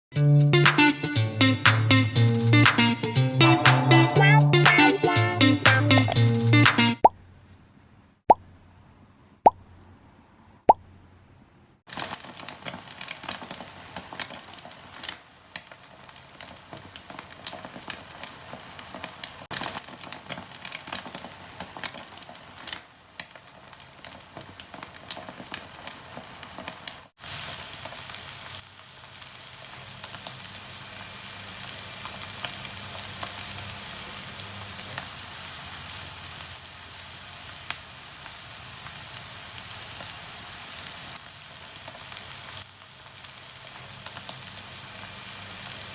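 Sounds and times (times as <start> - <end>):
omelette frying in hot oil: 11.9 - 45.9.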